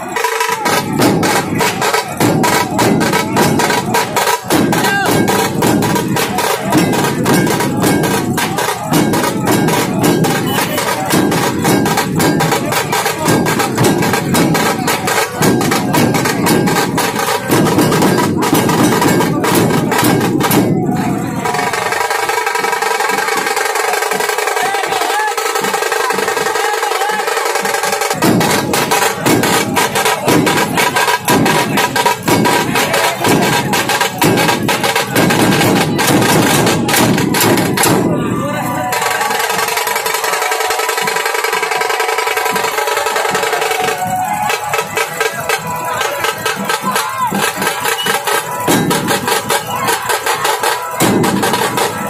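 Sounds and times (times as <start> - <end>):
fast dense drumming: 0.0 - 52.0.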